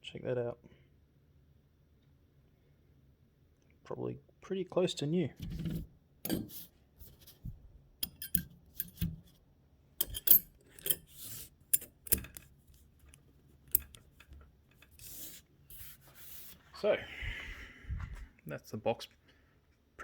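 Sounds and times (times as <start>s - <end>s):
metal gear parts clinking: 8.0s - 9.2s, 10.0s - 15.4s.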